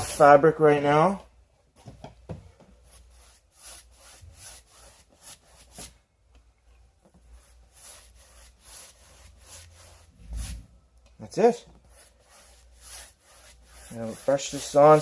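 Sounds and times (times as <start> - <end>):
scratchy paintbrush strokes: 2.8 - 5.9, 7.2 - 10.8, 11.8 - 15.0.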